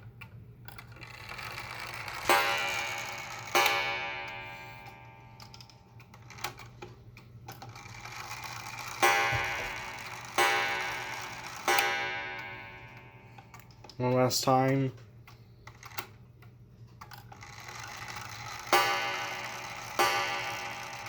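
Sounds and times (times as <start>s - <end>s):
clock ticking: 1.2s - 6.7s, 7.8s - 15.0s, 17.4s - 21.0s
clock gong strikes: 1.6s - 5.4s, 8.3s - 13.4s, 18.0s - 21.0s.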